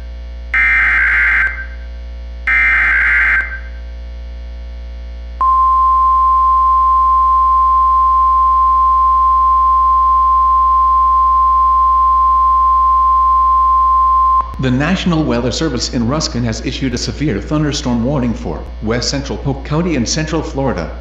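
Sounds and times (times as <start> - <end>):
steady alarm tone: 0.5 - 3.8, 5.4 - 14.5.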